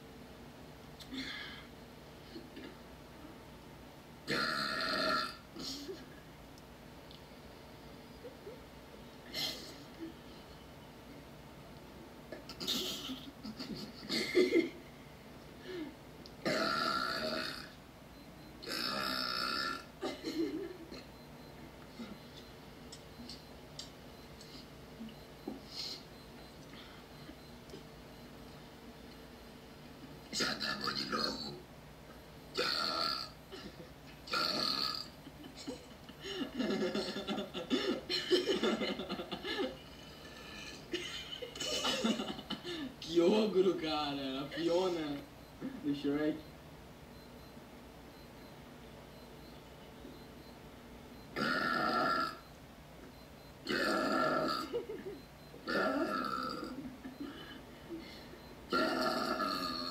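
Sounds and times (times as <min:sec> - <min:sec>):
woman belching: 0:04.3 - 0:05.4, 0:16.4 - 0:17.8, 0:18.6 - 0:20.2, 0:32.6 - 0:33.7, 0:34.3 - 0:35.2, 0:51.4 - 0:52.4, 0:53.7 - 0:54.8, 0:55.6 - 0:56.9, 0:58.7 - 0:59.9.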